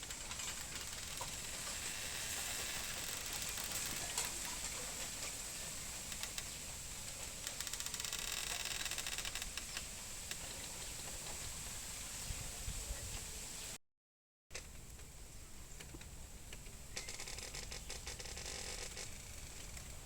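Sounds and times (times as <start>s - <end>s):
bamboo creaking: 0.0s - 11.4s, 15.8s - 20.0s
high-pitched hiss: 0.1s - 13.8s.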